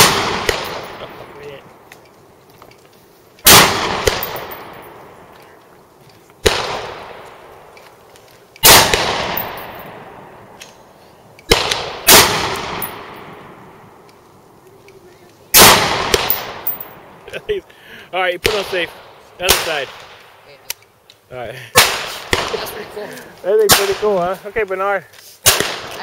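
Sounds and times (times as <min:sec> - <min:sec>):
pistol shots echoing: 0:00.0 - 0:01.1, 0:03.4 - 0:05.0, 0:06.4 - 0:07.5, 0:08.6 - 0:10.2, 0:11.5 - 0:13.6, 0:15.5 - 0:17.0, 0:25.5 - 0:25.9.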